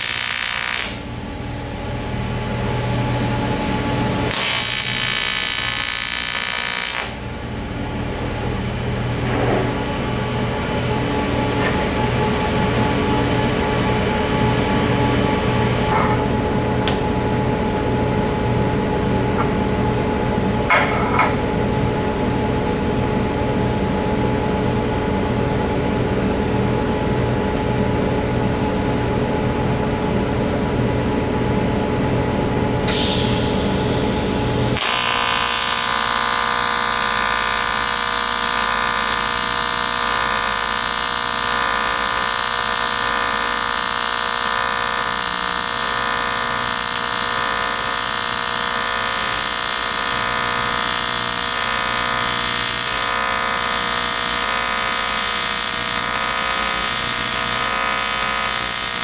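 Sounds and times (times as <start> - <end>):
power tool humming: 0.0 - 1.2, 2.5 - 7.3, 32.8 - 59.0
welding arc buzzing: 0.0 - 1.3, 2.0 - 7.6, 11.1 - 28.8, 32.7 - 59.0.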